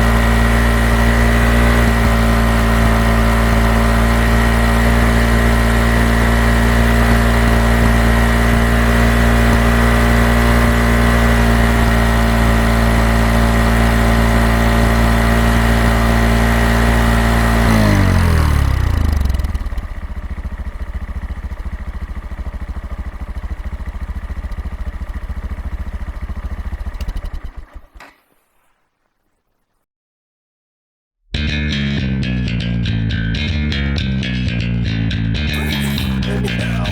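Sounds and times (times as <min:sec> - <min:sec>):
motorcycle engine revving and idling: 0:00.0 - 0:28.4.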